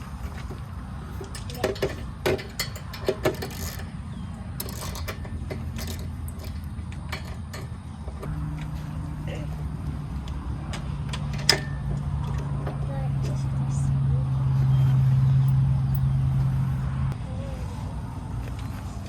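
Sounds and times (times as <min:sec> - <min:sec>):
metal tools clinking: 0:01.0 - 0:08.9, 0:10.7 - 0:12.5.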